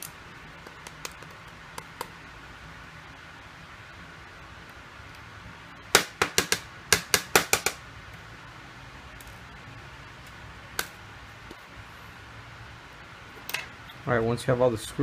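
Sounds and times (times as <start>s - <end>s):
small objects clicking on hard surface: 0.0s - 2.1s.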